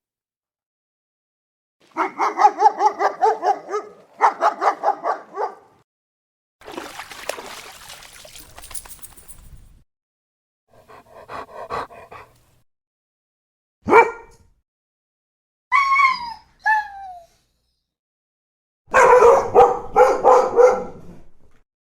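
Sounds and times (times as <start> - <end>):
dog barking: 1.9 - 5.8, 13.8 - 14.5, 18.9 - 21.1.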